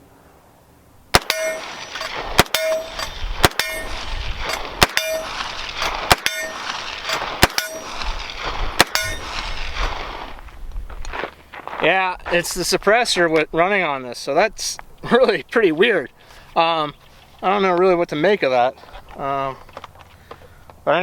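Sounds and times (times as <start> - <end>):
gunshots: 1.1 - 10.0
steel target ringing ping: 1.2 - 8.1, 8.8 - 9.5.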